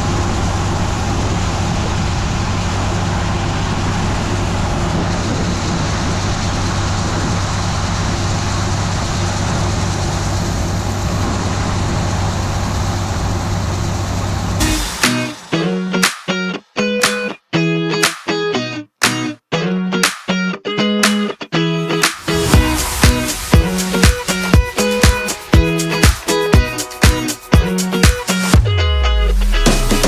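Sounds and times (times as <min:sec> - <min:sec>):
diesel engine drone: 0:00.0 - 0:16.0, 0:22.2 - 0:28.0
guitar music: 0:14.6 - 0:30.0.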